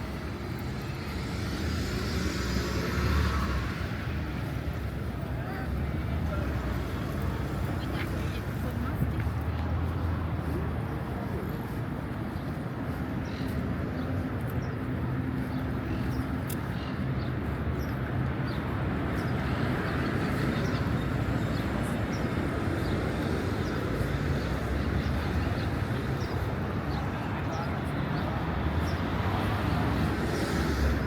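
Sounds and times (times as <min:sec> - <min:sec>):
traffic hum: 0:00.0 - 0:31.0.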